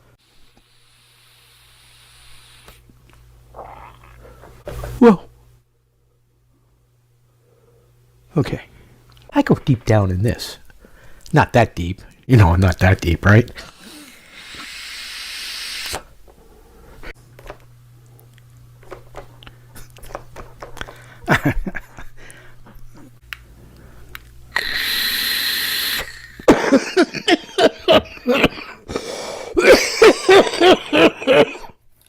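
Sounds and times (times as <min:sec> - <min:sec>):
electronic cigarette hissing: 0:00.2 - 0:02.9, 0:13.6 - 0:16.1, 0:24.5 - 0:26.5
man coughing hard: 0:26.5 - 0:28.9, 0:29.6 - 0:31.8.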